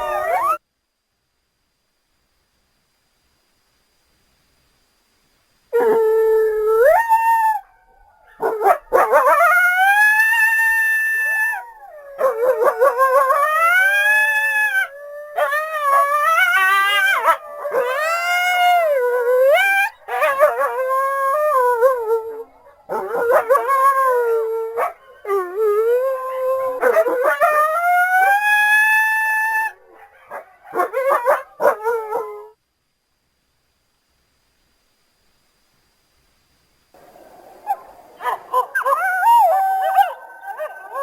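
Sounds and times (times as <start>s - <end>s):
coyote howling: 9.0s - 29.8s, 38.4s - 41.0s.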